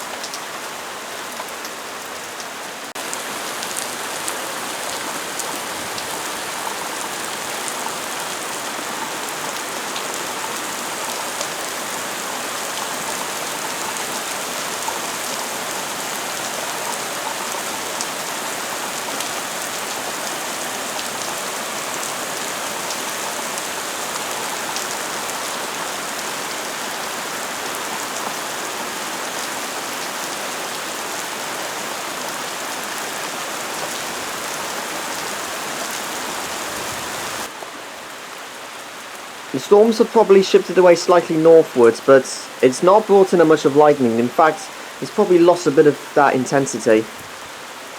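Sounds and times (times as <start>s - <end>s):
heavy rain hissing: 2.8s - 47.9s.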